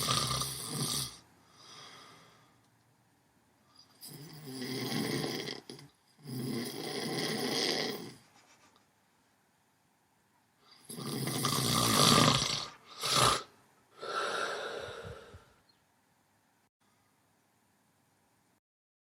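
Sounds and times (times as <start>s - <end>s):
person snoring: 0.0s - 2.5s, 3.8s - 8.2s, 10.7s - 15.6s
sharp snort: 10.9s - 14.6s.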